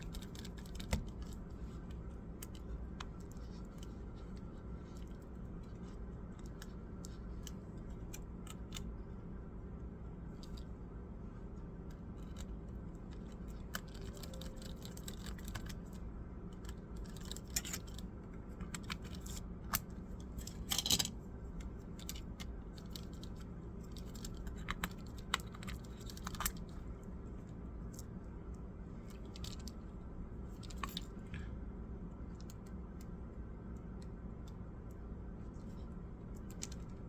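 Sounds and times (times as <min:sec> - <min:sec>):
clicks and scrapes of laptop parts: 0:00.0 - 0:09.0, 0:11.9 - 0:26.8
steady low hum: 0:00.0 - 0:37.0.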